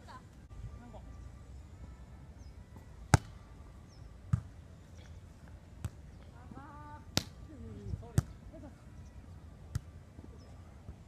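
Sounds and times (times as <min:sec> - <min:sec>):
volleyball hand smacks: 0:07.1 - 0:07.4.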